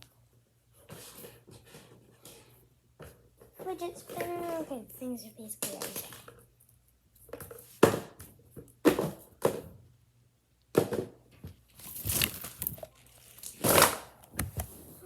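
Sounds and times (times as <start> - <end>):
fidget toys crinkling: 11.8 - 14.0.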